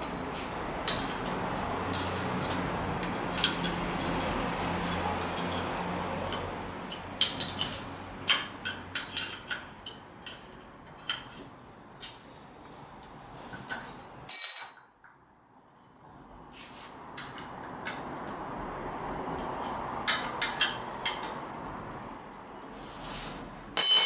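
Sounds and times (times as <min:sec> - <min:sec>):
sharp metallic clinks: 0:14.2 - 0:15.5.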